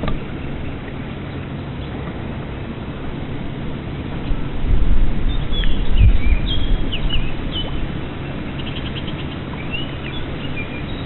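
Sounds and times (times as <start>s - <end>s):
low rumble on microphone: 0.0s - 11.0s
songbirds chirping and whistling: 5.2s - 11.0s
bird trill: 5.3s - 7.8s, 8.6s - 11.0s.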